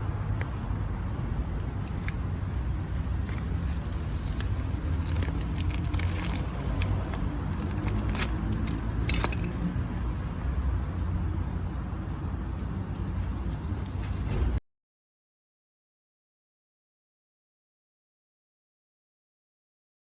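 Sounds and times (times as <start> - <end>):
steady low rumble: 0.0 - 14.6
metallic clicks of tools: 7.6 - 9.7.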